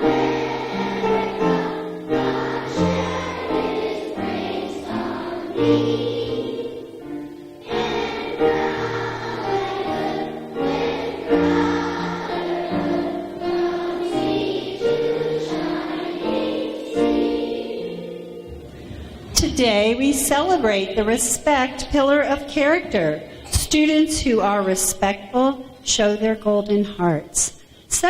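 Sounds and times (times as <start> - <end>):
children singing: 0.0 - 18.8.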